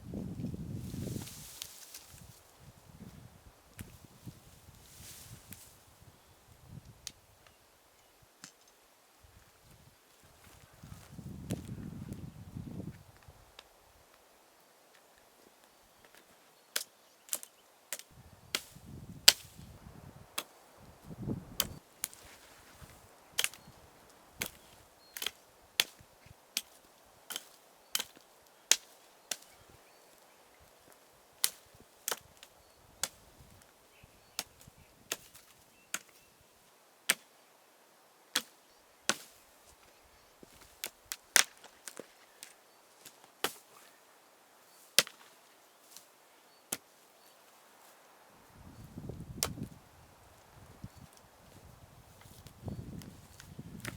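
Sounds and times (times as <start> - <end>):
axe chopping wood: 45.0 - 45.3.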